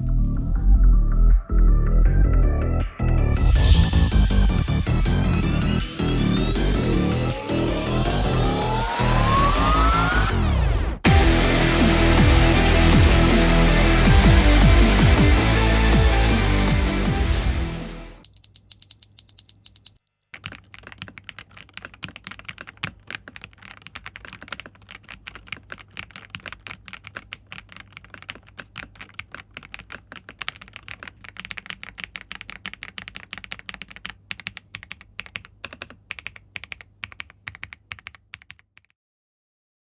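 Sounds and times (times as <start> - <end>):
mechanical keyboard typing: 18.2 - 38.9.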